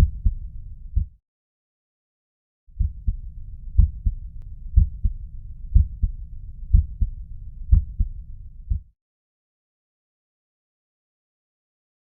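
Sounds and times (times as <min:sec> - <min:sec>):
heartbeat lub-dub: 0:00.0 - 0:01.2, 0:02.8 - 0:08.9.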